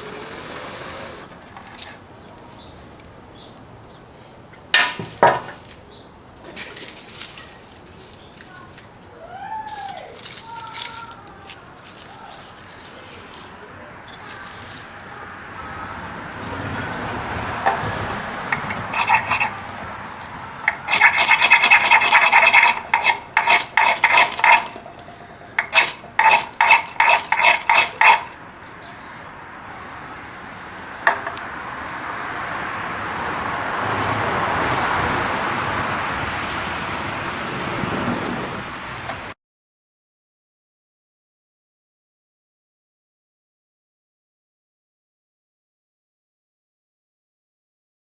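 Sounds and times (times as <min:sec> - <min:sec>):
hard edge scraping with screech: 0:17.6 - 0:28.4.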